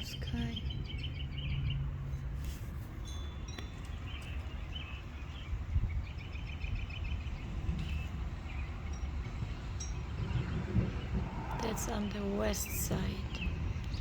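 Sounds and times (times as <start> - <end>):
birds chirping: 0.0 - 14.0
low wind rumble: 0.0 - 14.0
wind chimes ringing: 1.8 - 5.8, 7.7 - 14.0.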